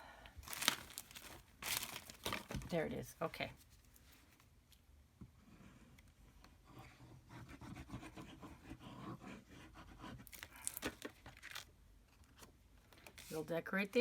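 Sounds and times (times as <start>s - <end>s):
paper rustling and scraping: 0.4s - 2.8s, 10.2s - 11.7s.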